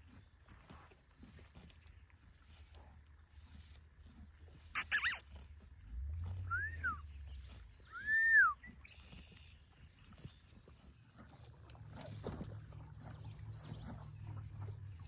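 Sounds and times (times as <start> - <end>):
animal calling: 4.8 - 5.3, 6.4 - 7.2
low rumble: 5.8 - 8.0.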